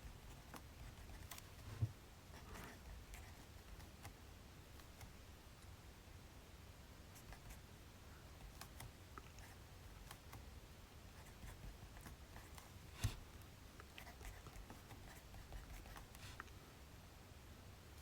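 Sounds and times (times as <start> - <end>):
pen scratching on paper: 0.0 - 3.8, 14.0 - 16.4.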